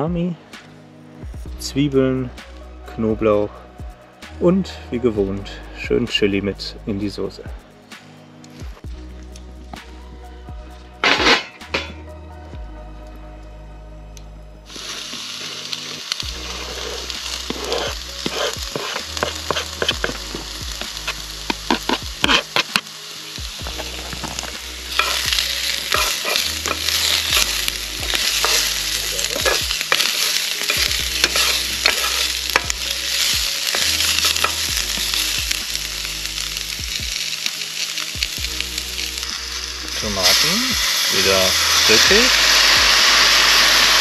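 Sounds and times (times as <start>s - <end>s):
spoon scraping a pan: 11.0s - 11.9s, 16.5s - 20.4s, 21.0s - 22.8s, 23.8s - 34.7s
food sizzling in a pan: 11.0s - 12.0s, 14.7s - 44.0s.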